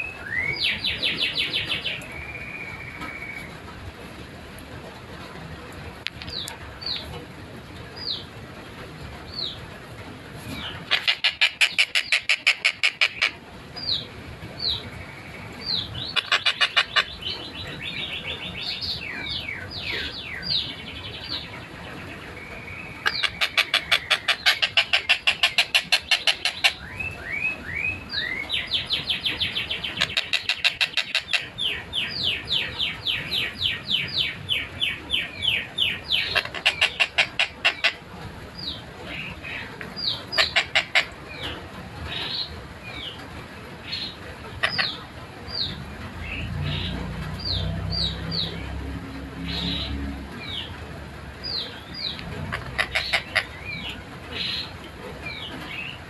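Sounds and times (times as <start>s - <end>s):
kingfisher calling: 10.6s - 14.8s, 15.6s - 21.4s, 22.8s - 38.0s, 38.6s - 42.5s, 43.8s - 48.7s, 49.3s - 50.7s, 51.4s - 56.0s.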